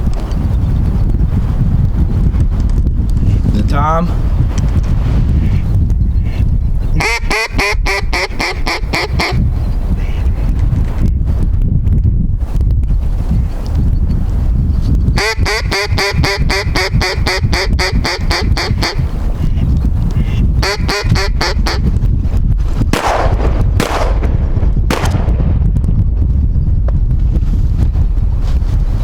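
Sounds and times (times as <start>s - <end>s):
wind rumble on microphone: 0.0s - 29.0s
mallard quacks: 7.0s - 9.4s.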